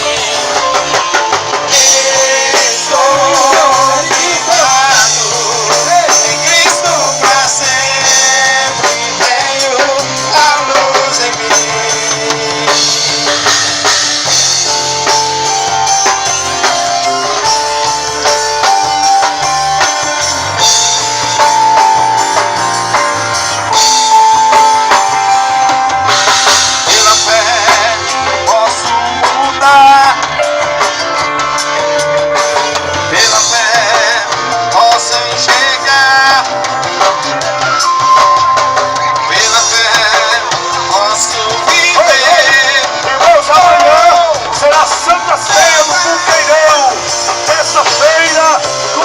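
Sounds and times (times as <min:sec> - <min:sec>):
person singing: 0:00.0 - 0:13.4, 0:26.8 - 0:30.6, 0:32.9 - 0:49.0
worship band playing: 0:00.0 - 0:49.0
lead instrument long notes: 0:09.6 - 0:49.0.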